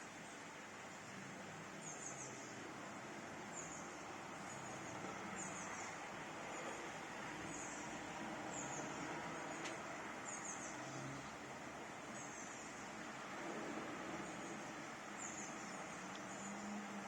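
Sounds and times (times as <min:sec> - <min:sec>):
rain hissing: 0:00.6 - 0:17.0
bird chirping: 0:07.5 - 0:11.3, 0:14.2 - 0:17.0.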